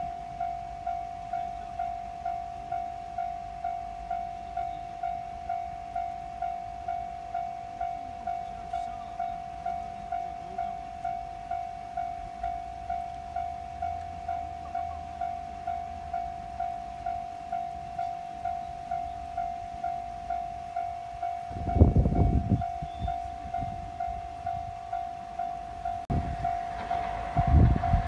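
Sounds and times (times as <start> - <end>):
level crossing alarm ringing: 0.0 - 28.0
train wheels clattering over rail joints: 26.2 - 28.0.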